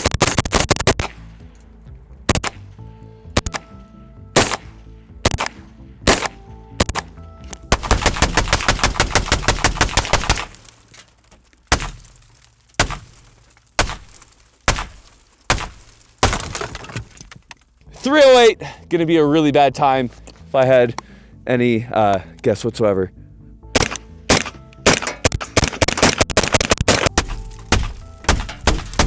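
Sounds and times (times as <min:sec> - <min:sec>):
rifle rounds striking windshield: 0:05.3 - 0:17.7, 0:23.8 - 0:29.0.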